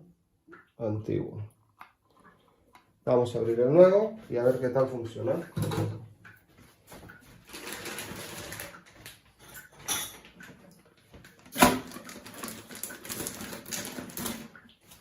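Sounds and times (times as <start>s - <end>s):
plastic packaging rustling: 7.4s - 9.2s, 11.2s - 15.0s.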